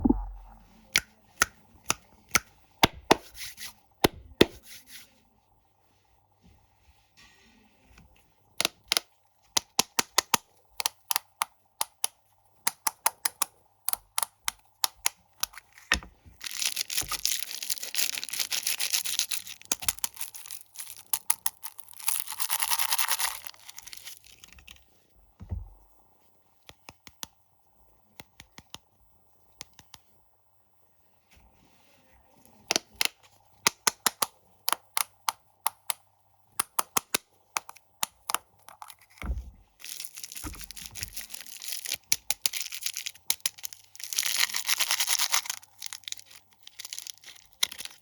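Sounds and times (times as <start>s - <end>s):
packaging rustling and tearing: 15.7s - 24.8s, 39.8s - 48.0s
snack packaging crinkling: 16.4s - 24.7s, 39.8s - 48.0s.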